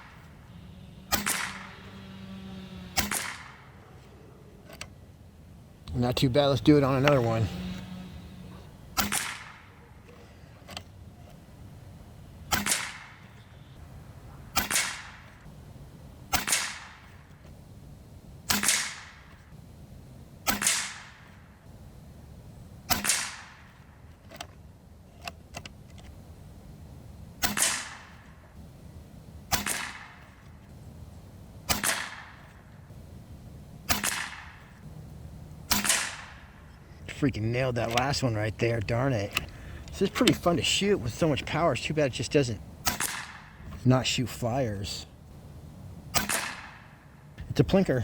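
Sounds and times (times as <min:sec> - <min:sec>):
air rifle shots: 0:01.0 - 0:02.0, 0:02.9 - 0:03.8, 0:06.8 - 0:09.8, 0:12.5 - 0:13.4, 0:14.5 - 0:15.5, 0:16.3 - 0:17.3, 0:18.4 - 0:19.6, 0:20.4 - 0:21.8, 0:22.9 - 0:23.9, 0:27.4 - 0:28.4, 0:29.5 - 0:30.5, 0:31.6 - 0:32.6, 0:33.8 - 0:34.9, 0:35.7 - 0:36.6, 0:42.8 - 0:43.6, 0:46.1 - 0:47.1.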